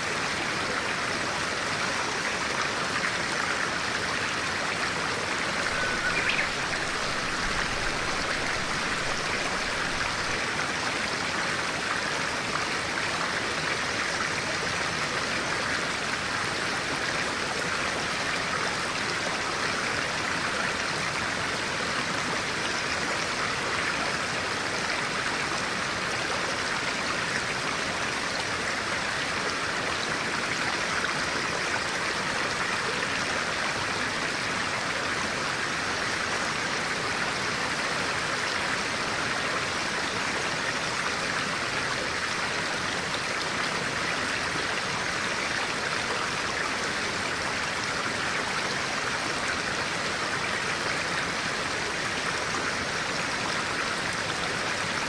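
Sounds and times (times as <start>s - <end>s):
stream flowing: 0.0s - 55.0s
bird chirp: 5.5s - 10.3s.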